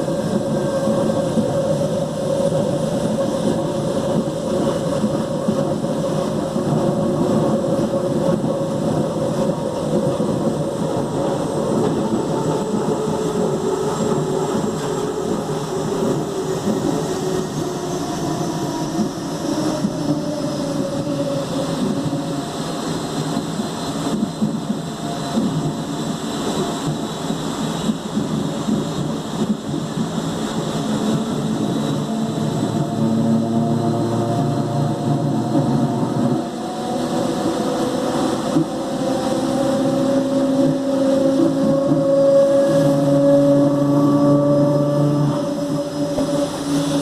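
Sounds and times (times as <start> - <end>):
electric train running on rails: 0.0 - 47.0
whining tones falling in pitch: 31.0 - 47.0.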